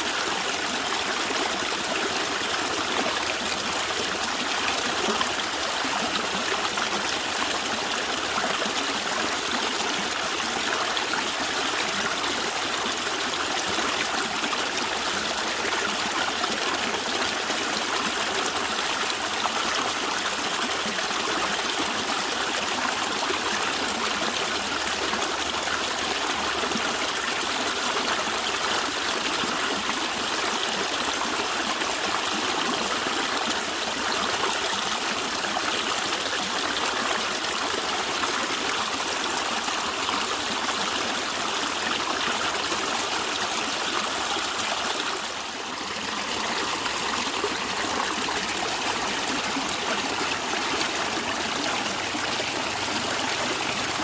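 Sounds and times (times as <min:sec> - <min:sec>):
stream water gurgling: 0:00.0 - 0:54.0.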